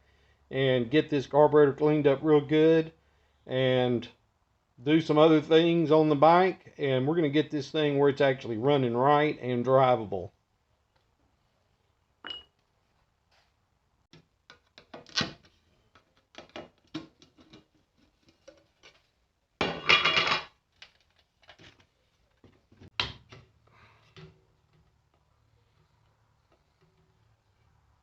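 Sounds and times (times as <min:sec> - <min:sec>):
metal parts clinking on workbench: 0:19.6 - 0:20.5.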